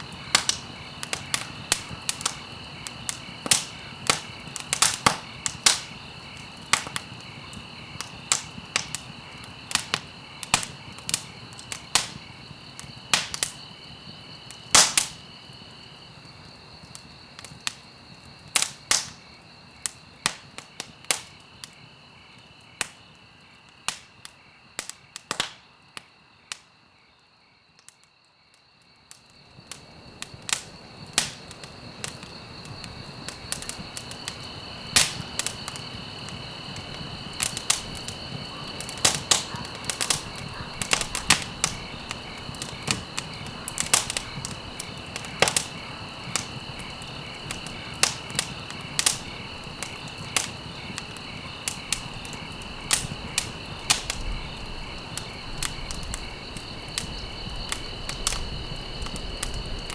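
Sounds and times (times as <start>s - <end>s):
fire hissing: 0.0s - 16.8s, 29.7s - 59.9s
wood fire crackling and popping: 0.0s - 26.7s, 29.1s - 59.9s.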